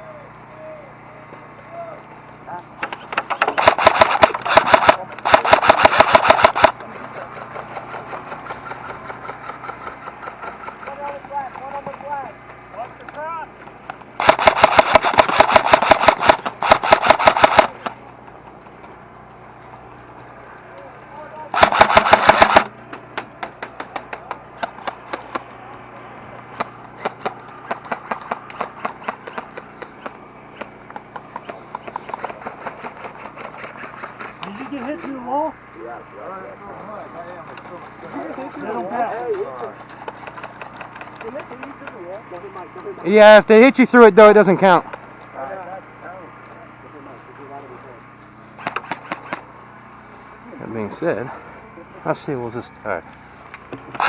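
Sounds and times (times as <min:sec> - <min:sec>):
airsoft gun rapid fire: 0:03.0 - 0:11.6, 0:14.1 - 0:18.0, 0:21.5 - 0:25.5, 0:26.5 - 0:30.8, 0:31.4 - 0:34.3, 0:48.6 - 0:49.5.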